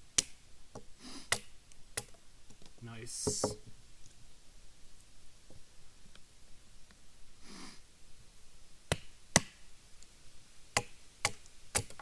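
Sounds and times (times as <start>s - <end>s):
soft sniffing breath: 1.0s - 1.4s, 7.4s - 7.9s
knife splitting firewood knocks: 3.2s - 3.6s.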